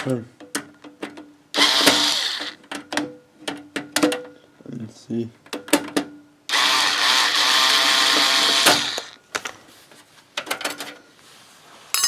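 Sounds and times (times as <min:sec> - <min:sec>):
power drill-driver running: 0:01.6 - 0:02.6, 0:06.5 - 0:09.2.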